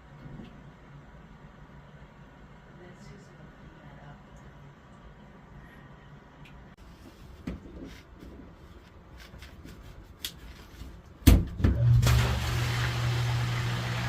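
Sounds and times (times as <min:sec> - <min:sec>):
sump pump motor humming: 0:11.6 - 0:14.0
water rushing: 0:12.0 - 0:14.0.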